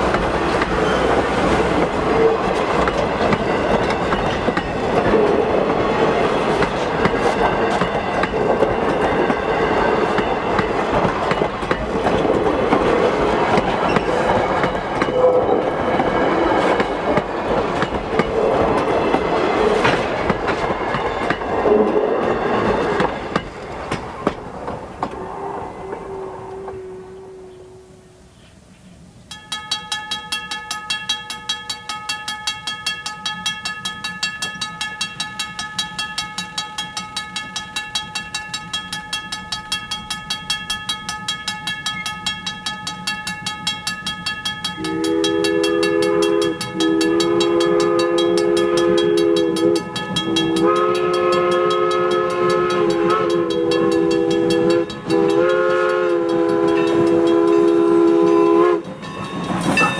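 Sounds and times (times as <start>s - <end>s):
steam whistle blasts: 0.0s - 3.2s, 15.0s - 16.5s, 21.6s - 22.6s, 25.2s - 28.2s, 44.8s - 59.0s
locomotive bell ringing: 0.0s - 27.4s, 29.3s - 59.9s.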